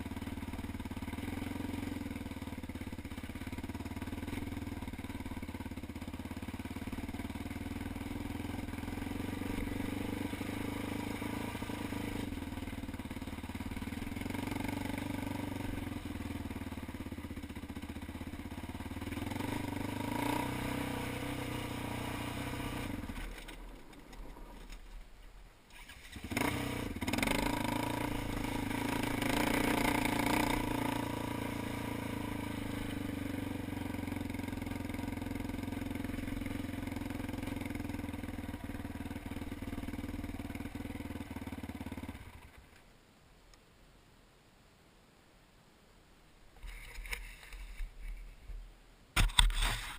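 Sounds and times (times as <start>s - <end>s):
atv engine running: 0.0s - 24.9s, 25.7s - 42.7s.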